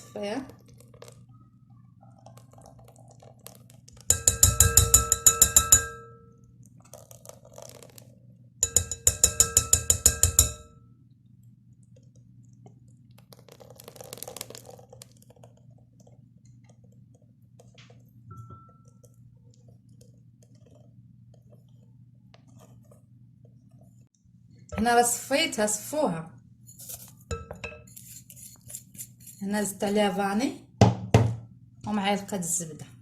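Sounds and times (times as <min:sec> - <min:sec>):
metal utensil tapping metal strainer: 0:04.1 - 0:06.1, 0:08.6 - 0:10.7.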